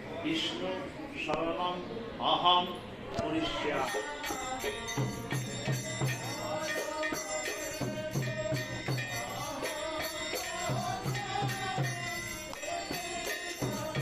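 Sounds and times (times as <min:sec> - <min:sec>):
jingling percussion: 0:03.6 - 0:14.0.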